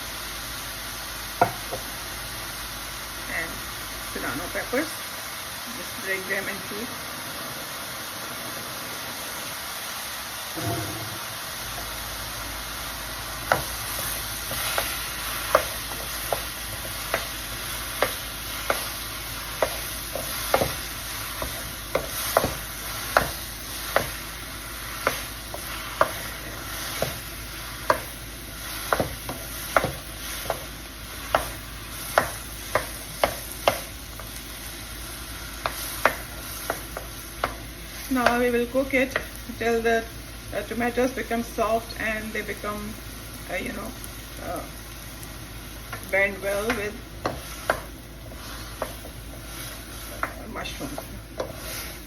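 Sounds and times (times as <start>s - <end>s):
vegetables sizzling in oil: 0.0s - 52.0s.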